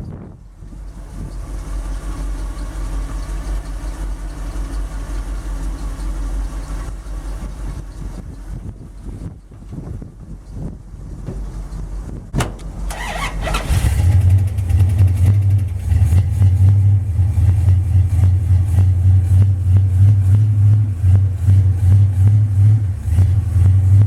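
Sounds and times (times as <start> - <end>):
truck engine running loud: 0.0 - 24.0
starter cranking engine: 11.1 - 16.3.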